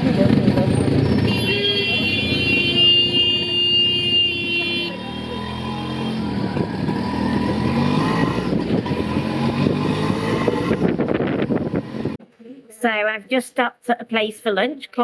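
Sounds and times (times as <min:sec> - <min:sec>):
vehicle horn: 0:01.2 - 0:06.3
small engine revving: 0:04.9 - 0:12.2.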